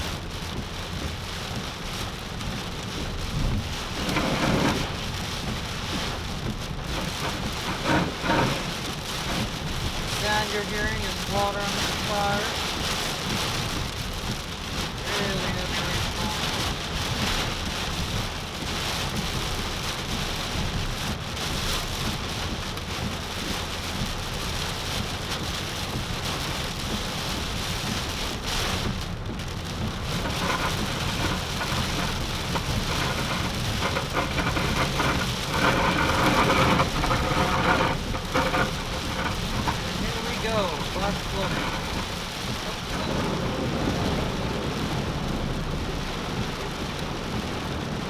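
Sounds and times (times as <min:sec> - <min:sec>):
heavy rain drumming on vehicle: 0:00.0 - 0:48.0.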